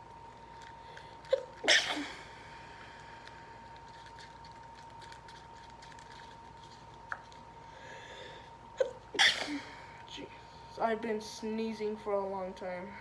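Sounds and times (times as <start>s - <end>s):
faint steady hum: 0.0s - 13.0s
person sneezing: 1.3s - 2.3s, 8.8s - 9.8s.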